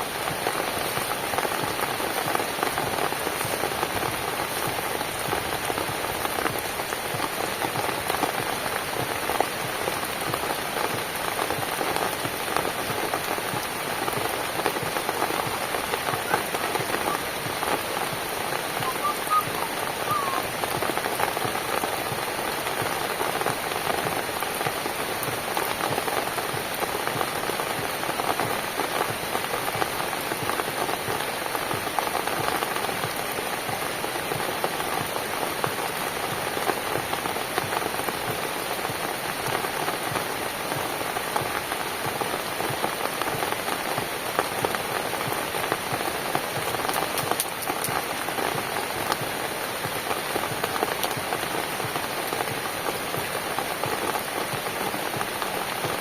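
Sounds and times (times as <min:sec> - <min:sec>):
rain pattering on a cabin: 0:00.0 - 0:56.0.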